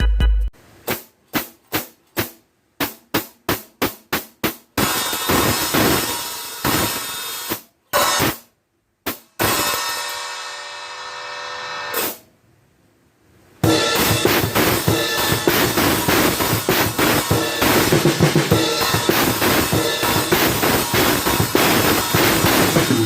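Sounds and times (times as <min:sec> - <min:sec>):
drum kit playing busy beat: 0:00.0 - 0:08.5, 0:09.1 - 0:10.6, 0:11.7 - 0:12.2, 0:13.6 - 0:23.0
cymbal crash: 0:04.8 - 0:08.4, 0:09.3 - 0:12.2, 0:13.6 - 0:23.0.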